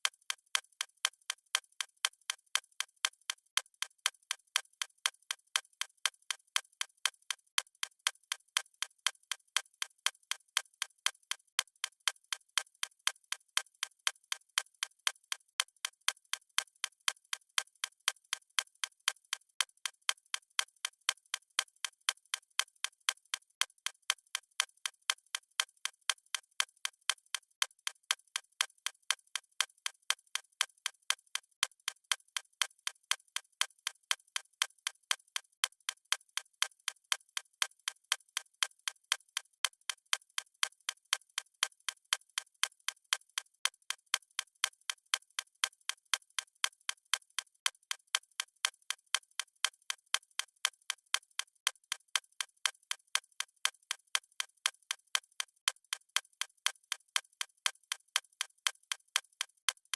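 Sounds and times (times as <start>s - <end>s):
watch ticking: 28.8s - 59.9s.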